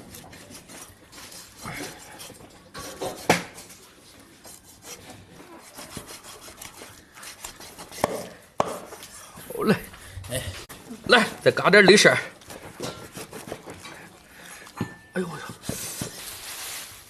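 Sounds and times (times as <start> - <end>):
knife cutting and scraping meat: 0.0 - 9.4, 11.3 - 14.8.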